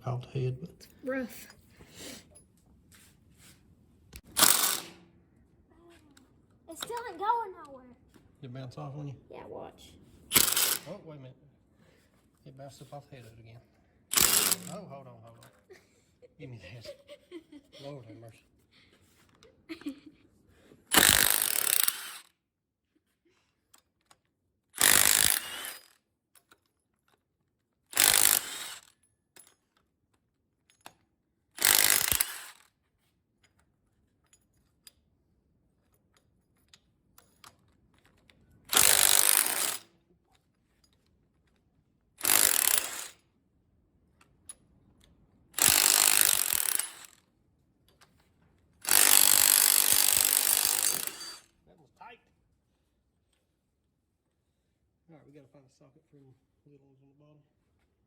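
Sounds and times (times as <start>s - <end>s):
power wrench spinning bolts: 4.3s - 5.0s, 10.3s - 10.9s, 14.1s - 14.8s, 20.9s - 22.3s, 24.8s - 25.9s, 27.9s - 29.0s, 31.6s - 32.6s, 37.6s - 39.9s, 42.2s - 43.2s, 45.6s - 47.2s, 48.8s - 51.5s.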